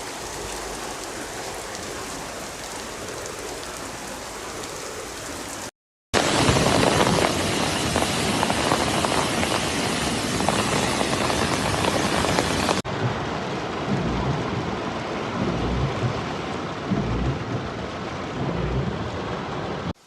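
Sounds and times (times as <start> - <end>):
heavy rain: 0.0 - 20.0
low rumbles: 6.2 - 20.0.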